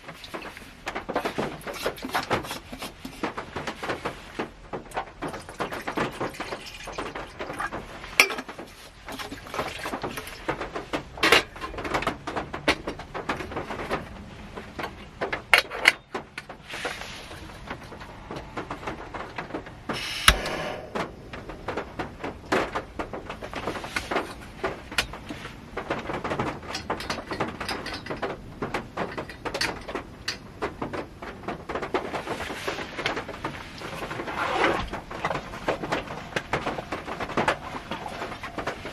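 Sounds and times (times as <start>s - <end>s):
rain pattering on car roof: 0.0s - 38.9s
steady hiss: 16.6s - 24.6s
loud knock: 20.3s - 22.1s.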